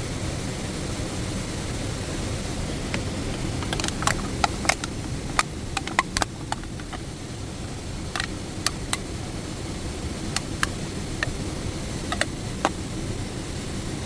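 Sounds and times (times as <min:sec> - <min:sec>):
low rushing noise: 0:00.0 - 0:14.0
sharp pops and crackles: 0:02.4 - 0:13.1.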